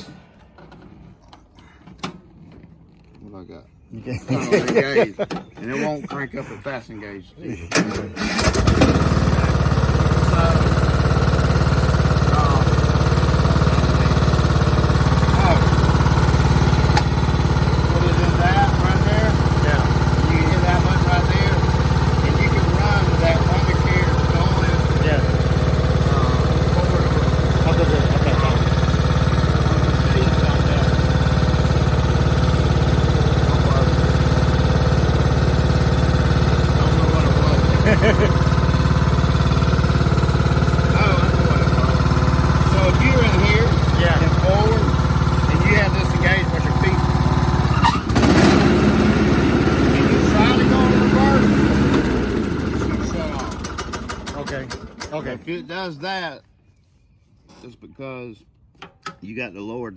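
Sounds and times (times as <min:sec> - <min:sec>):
lawnmower engine idling: 0:04.3 - 0:06.8, 0:07.7 - 0:55.5.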